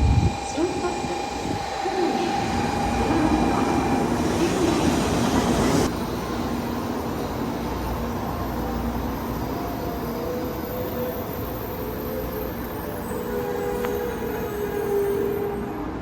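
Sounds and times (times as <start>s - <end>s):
high-speed train on rails: 0.0s - 16.0s.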